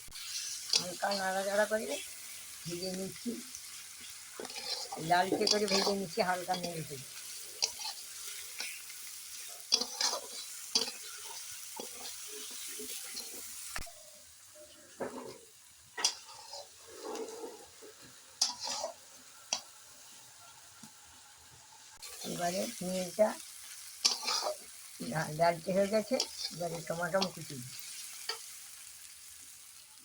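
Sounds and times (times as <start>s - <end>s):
onions sizzling in hot oil: 0.0s - 30.0s
spatula scraping and knocking pan: 4.3s - 6.8s.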